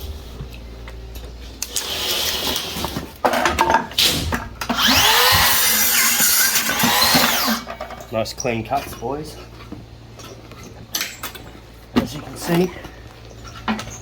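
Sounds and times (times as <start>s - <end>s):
power saw cutting timber: 4.7s - 7.7s.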